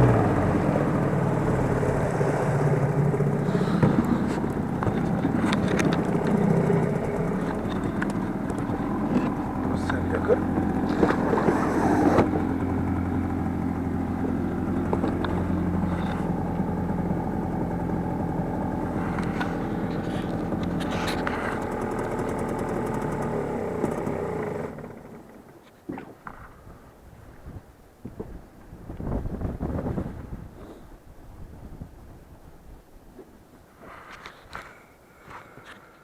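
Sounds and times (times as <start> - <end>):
boat motor running: 0.0 - 26.6.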